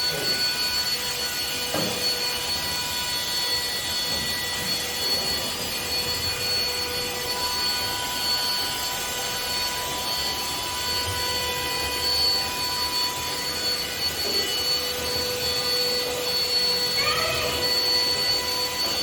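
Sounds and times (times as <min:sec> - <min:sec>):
handheld vacuum cleaner running: 0:00.0 - 0:19.0.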